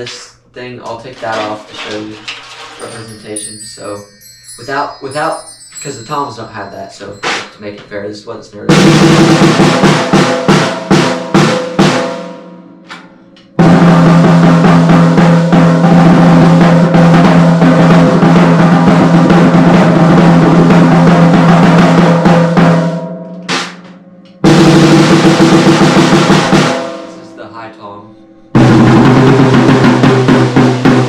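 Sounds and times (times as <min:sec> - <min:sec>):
snare drum hits: 0:07.2 - 0:07.6, 0:08.7 - 0:27.2
fast run on higher drum: 0:08.7 - 0:12.6, 0:13.6 - 0:27.2, 0:28.6 - 0:31.0
snare drum roll: 0:08.7 - 0:13.0, 0:13.6 - 0:27.2, 0:28.6 - 0:31.0.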